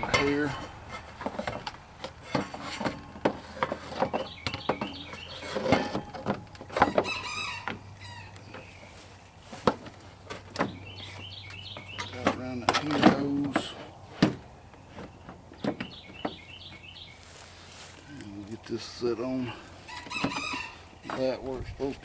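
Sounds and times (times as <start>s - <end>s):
plastic knocks clicks and scrapes: 0.1s - 7.8s.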